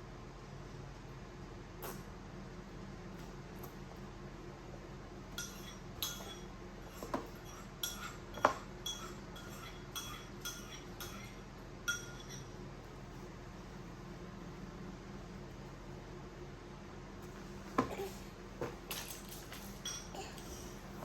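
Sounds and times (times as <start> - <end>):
spoon clinking against bowl: 5.4 - 6.5, 7.3 - 12.6, 19.8 - 20.1.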